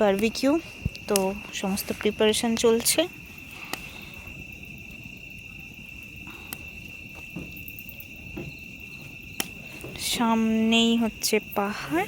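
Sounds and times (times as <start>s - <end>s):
cricket trilling: 0.0s - 12.0s.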